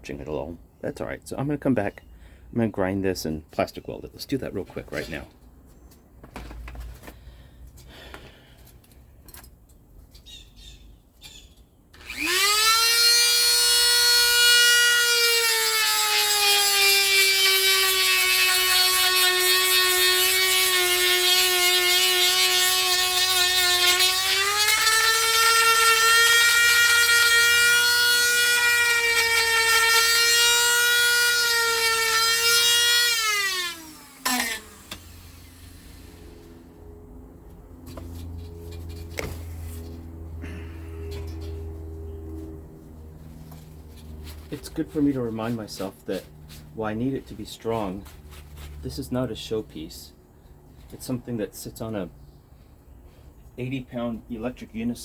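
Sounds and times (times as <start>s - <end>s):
electric grinder high whine: 12.0s - 36.9s.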